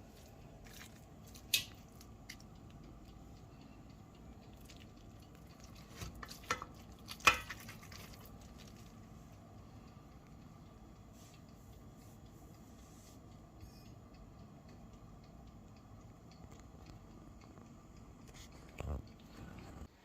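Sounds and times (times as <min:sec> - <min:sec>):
faint steady background noise: 0:00.0 - 0:20.0
spoon clinking and scraping pot: 0:06.0 - 0:08.2.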